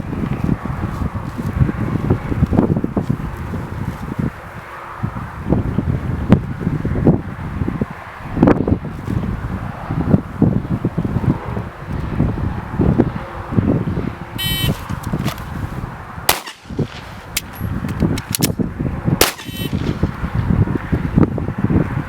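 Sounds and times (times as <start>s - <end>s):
wind rumbling on microphone: 0.0s - 22.0s
pistol shots: 16.3s - 17.6s, 19.2s - 20.1s.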